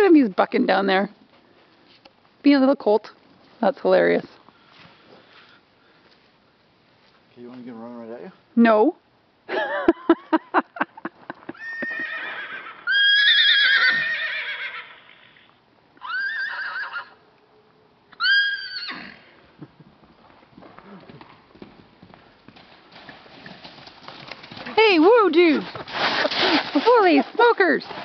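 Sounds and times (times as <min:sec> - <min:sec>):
horse whinnying: 0:11.5 - 0:17.2, 0:18.1 - 0:19.4
hoofbeats: 0:19.3 - 0:28.0.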